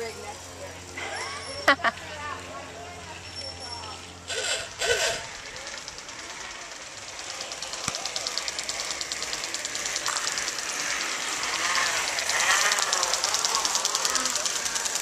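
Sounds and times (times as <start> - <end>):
rapid mechanical clicking: 4.3 - 15.0.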